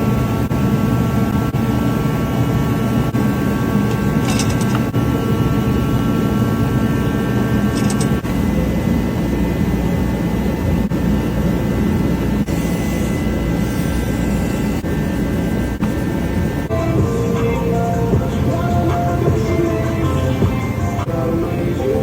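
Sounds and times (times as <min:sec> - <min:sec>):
moped engine running with whine: 0:00.0 - 0:22.0.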